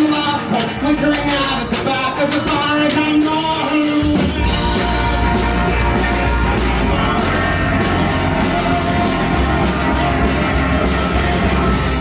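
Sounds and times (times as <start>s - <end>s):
heavy bass: 0.0s - 12.0s
live rock band playing: 0.0s - 12.0s
distorted guitar: 3.5s - 12.0s.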